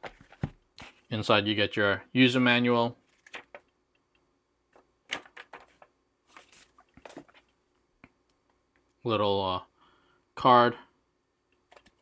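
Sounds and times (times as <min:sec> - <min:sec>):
paper and cardboard handling: 0:00.0 - 0:01.1, 0:05.1 - 0:07.5.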